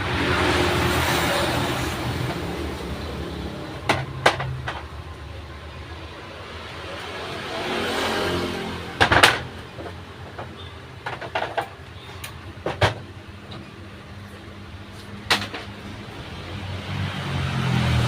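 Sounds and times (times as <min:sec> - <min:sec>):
road traffic passing: 0:00.0 - 0:18.0
sharp knocks: 0:03.8 - 0:05.0, 0:08.9 - 0:11.8, 0:12.6 - 0:13.1.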